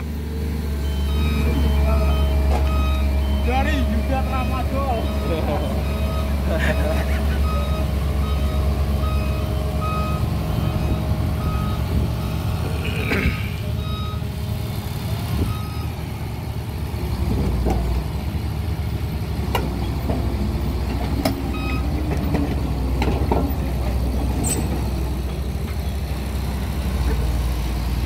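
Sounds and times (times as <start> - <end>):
crane diesel engine running: 0.0 - 28.0
short beeps: 0.8 - 12.4, 21.5 - 21.9.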